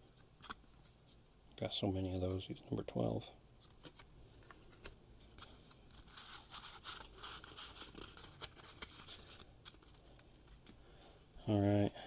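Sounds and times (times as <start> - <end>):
hands handling trading cards: 0.1 - 1.3, 3.6 - 10.9.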